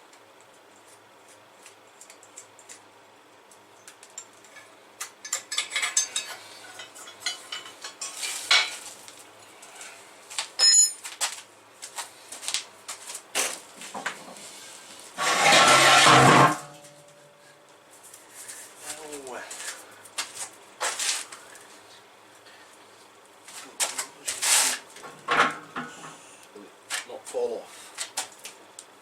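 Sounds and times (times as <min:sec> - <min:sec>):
scrap metal clinking and clanking: 0:04.5 - 0:08.9, 0:10.6 - 0:11.1, 0:15.2 - 0:16.9
short metallic ring: 0:10.6 - 0:11.0.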